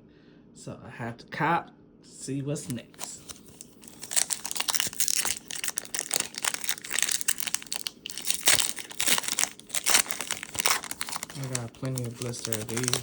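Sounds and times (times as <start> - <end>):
packaging crinkling and tearing: 2.6 - 13.0.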